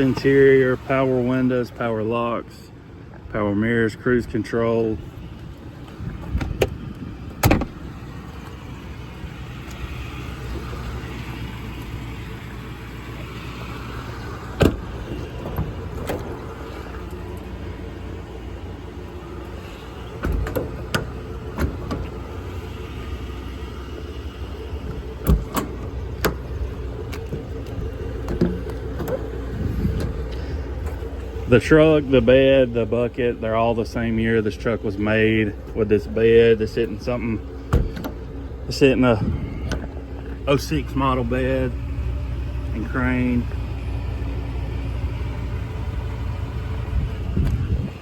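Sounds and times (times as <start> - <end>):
truck engine idling: 0.0 - 48.0
sharp clicks and knocks: 24.8 - 29.3.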